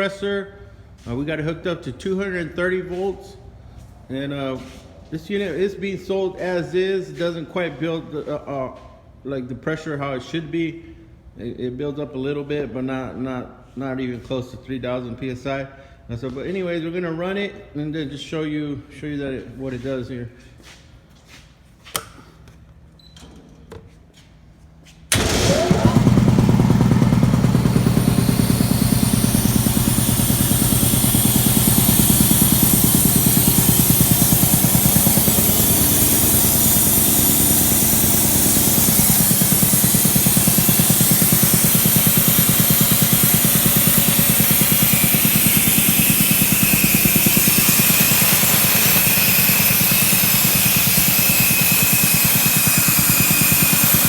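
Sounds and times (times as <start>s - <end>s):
air compressor running: 25.1s - 54.0s
compressor hiss: 25.1s - 54.0s.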